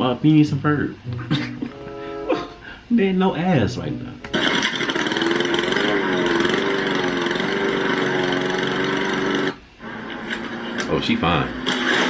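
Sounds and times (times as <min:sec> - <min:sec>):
lawn mower engine running: 0:03.8 - 0:12.0.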